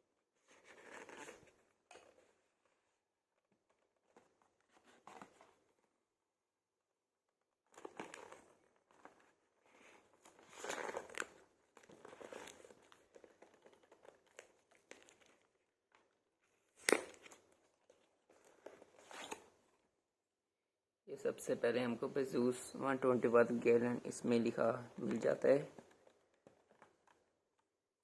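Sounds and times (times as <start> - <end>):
cardboard crinkling and rustling: 0.3 - 6.1, 7.6 - 19.8, 25.0 - 27.6.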